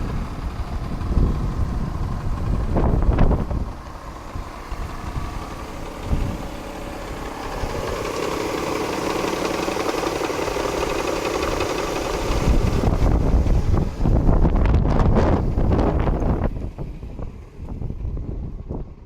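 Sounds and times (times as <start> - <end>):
wind buffeting the microphone: 0.0 - 9.1, 10.6 - 19.0
car engine idling with a knock: 0.0 - 19.0.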